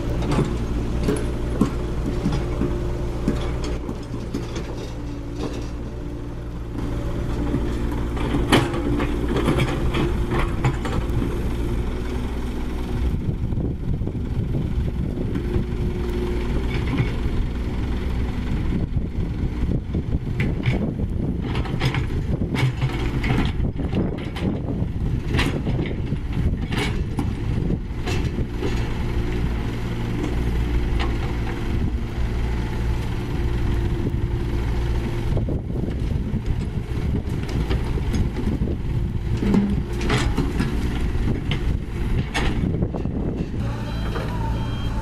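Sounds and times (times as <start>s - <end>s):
heavy machinery diesel engines: 0.0s - 45.0s
metallic knocks and clanks: 39.3s - 40.8s.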